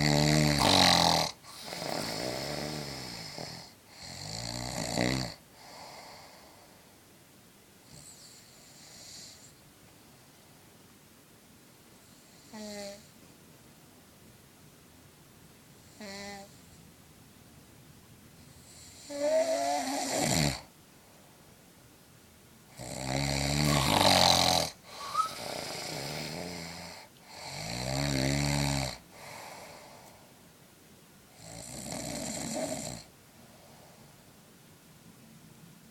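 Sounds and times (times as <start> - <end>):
man snoring: 0.0 - 6.4, 18.7 - 20.7, 22.7 - 30.0, 31.4 - 33.1
quiet breaths out: 29.0 - 30.5, 33.0 - 34.4.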